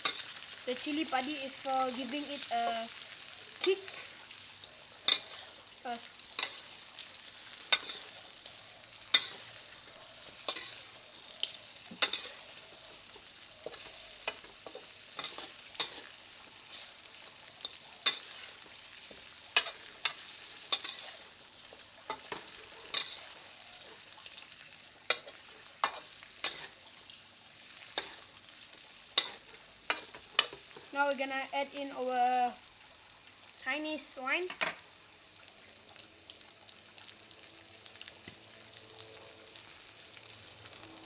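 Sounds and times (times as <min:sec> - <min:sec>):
meat sizzling in hot oil: 0:00.0 - 0:41.0.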